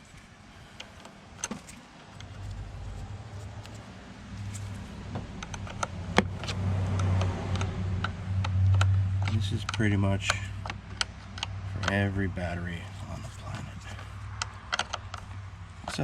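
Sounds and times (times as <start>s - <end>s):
engine humming: 0.0s - 16.0s
hand tools clicking on metal: 4.4s - 12.1s.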